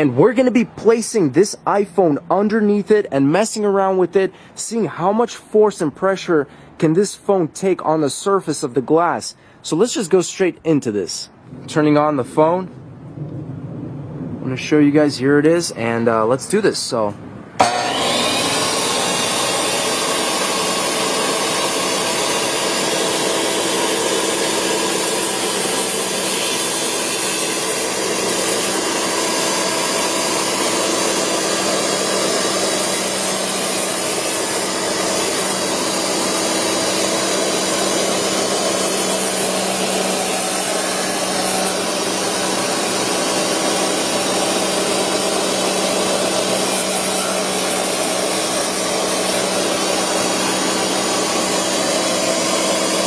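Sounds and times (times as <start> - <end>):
motor hum: 17.6 - 53.0
saw blade cutting glass: 17.6 - 53.0.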